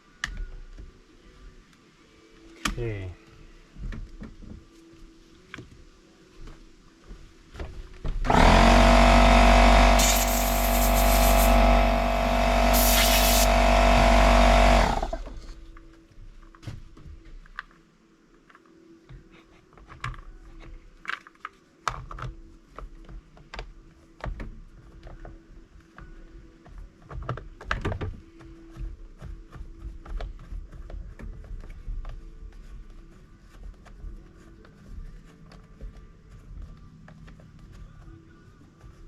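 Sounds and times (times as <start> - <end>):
air compressor motor running: 8.3 - 15.6
compressed air hissing: 9.7 - 15.2.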